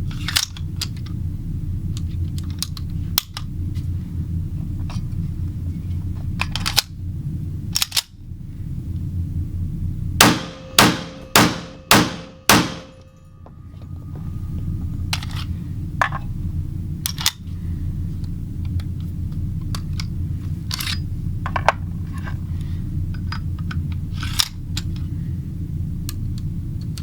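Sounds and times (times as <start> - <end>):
steady low hum: 0.0 - 27.0
metal handling clicks: 2.0 - 3.5, 6.4 - 7.0, 7.7 - 8.1, 17.0 - 17.4, 23.1 - 25.0
pistol shots: 10.2 - 13.0.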